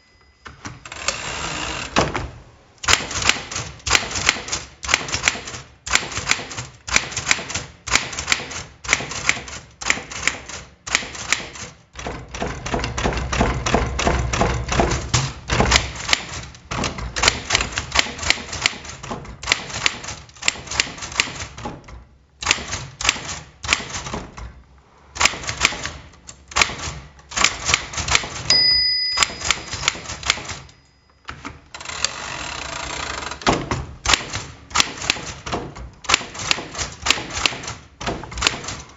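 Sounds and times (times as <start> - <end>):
typewriter margin bell: 0.0 - 1.8, 28.4 - 32.1
typewriter key strikes: 2.8 - 24.5, 25.2 - 32.2, 33.4 - 38.9.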